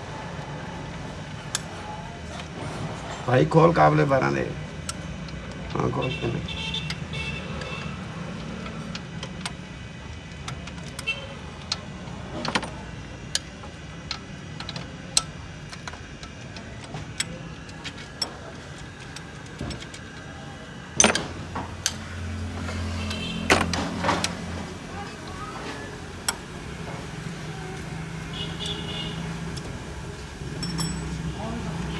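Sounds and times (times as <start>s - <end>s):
metallic clicks of spanner and bolts: 6.6s - 20.4s, 21.0s - 22.2s, 28.2s - 29.8s, 30.5s - 31.3s.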